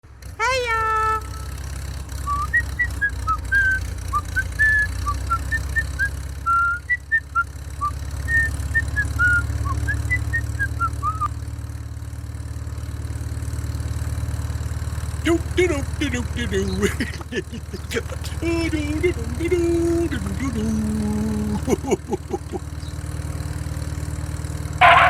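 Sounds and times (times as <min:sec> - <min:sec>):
low engine-like rumble: 0:00.1 - 0:25.0
person whistling a tune: 0:02.3 - 0:11.3.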